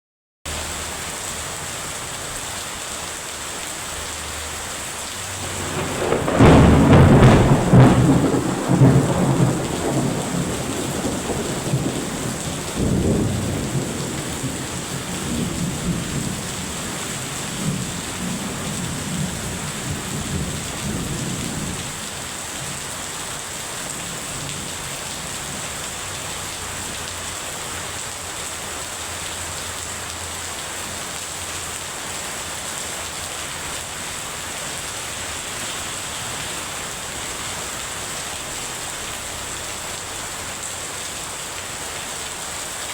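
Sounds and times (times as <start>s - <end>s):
heavy rain falling: 0.5s - 42.9s
rolling thunder: 5.3s - 23.0s.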